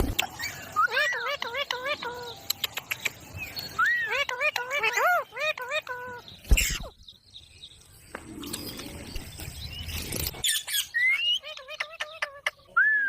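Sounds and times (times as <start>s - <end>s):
parrot chirping: 0.3s - 2.9s, 3.8s - 6.9s, 10.4s - 12.8s.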